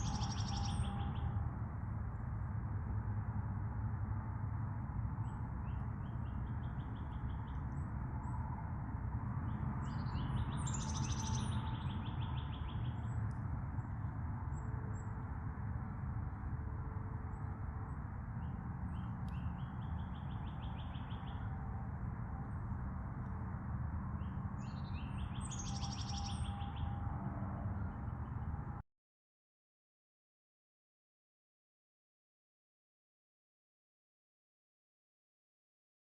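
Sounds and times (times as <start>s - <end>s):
songbird singing high trills: 0.0s - 1.3s, 9.5s - 13.2s, 24.6s - 27.0s.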